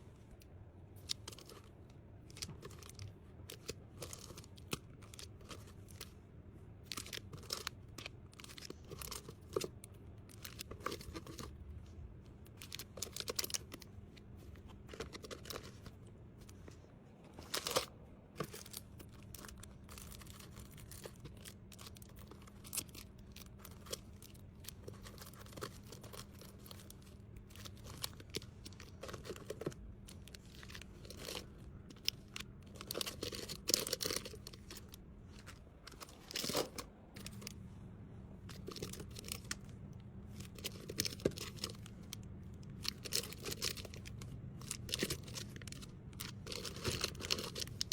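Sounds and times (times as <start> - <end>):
faint steady hum: 0.0 - 47.9
plastic packaging crinkling: 12.5 - 37.6, 38.4 - 47.9.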